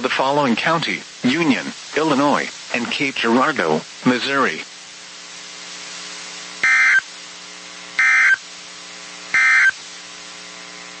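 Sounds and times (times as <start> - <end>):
steady electrical hum: 0.0 - 11.0
digital data tone bursts: 6.6 - 7.1, 8.0 - 8.4, 9.4 - 9.8.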